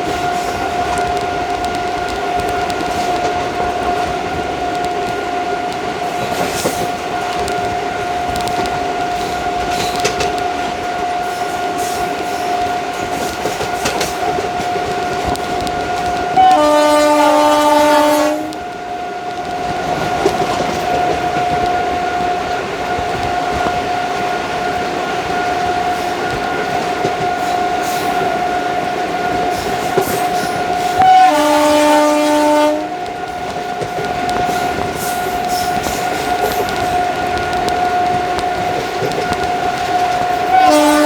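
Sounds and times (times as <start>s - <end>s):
train coach running whine: 0.0s - 41.0s
wheels clicking over rail joints: 0.0s - 41.0s
locomotive air horn: 16.3s - 18.6s, 30.9s - 33.0s, 40.5s - 41.0s.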